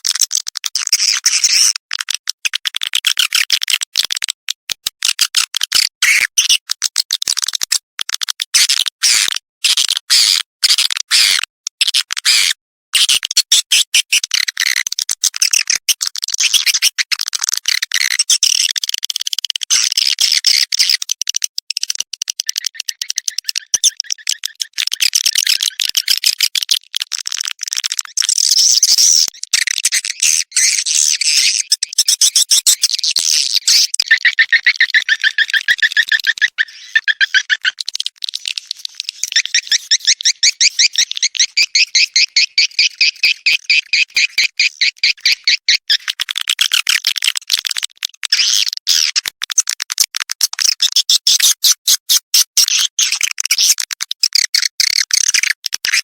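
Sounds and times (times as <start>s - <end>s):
swiftlet twittering calls: 39.1s - 45.8s.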